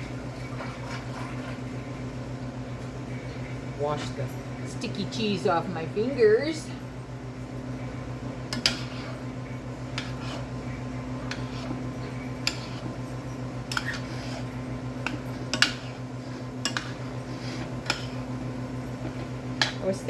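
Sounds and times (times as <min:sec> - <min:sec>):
low machine hum: 0:00.0 - 0:20.0
dishes and utensils clinking: 0:13.7 - 0:14.5.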